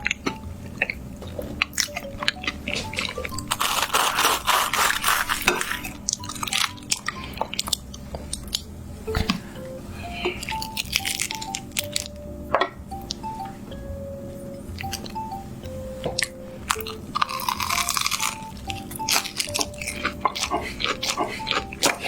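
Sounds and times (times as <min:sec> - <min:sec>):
utensils clicking on dishes: 0:00.0 - 0:08.6, 0:16.1 - 0:22.0
light background music: 0:00.0 - 0:22.0.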